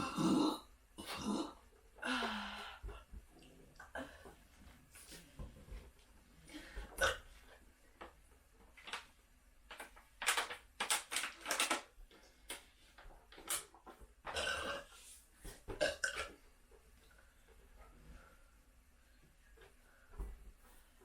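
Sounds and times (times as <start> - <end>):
person burping into a balloon: 0.0 - 1.7, 6.9 - 7.3, 14.3 - 14.9, 15.7 - 16.4.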